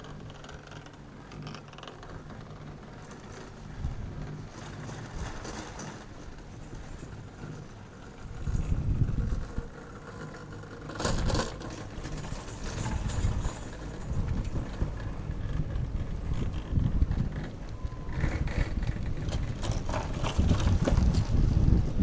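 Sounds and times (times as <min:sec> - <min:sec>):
chairlift rattle: 0:00.0 - 0:22.0
chairlift rope rumbling: 0:00.0 - 0:22.0
wind on microphone: 0:03.6 - 0:07.6, 0:08.2 - 0:10.2, 0:11.0 - 0:22.0.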